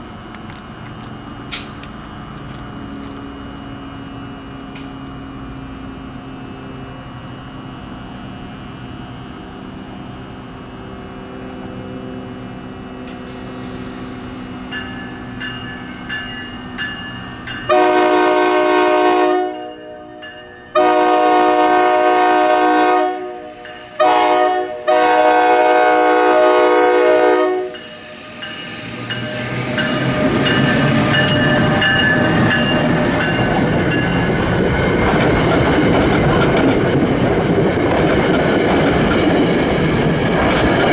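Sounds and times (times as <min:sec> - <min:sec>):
electric locomotive rumble: 0:00.0 - 0:40.9
train horn blasts: 0:17.6 - 0:28.1.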